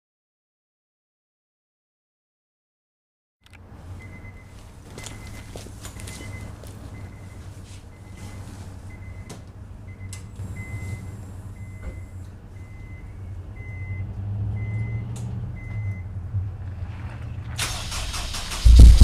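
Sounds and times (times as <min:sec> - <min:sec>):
low rumble: 0:18.5 - 0:19.0.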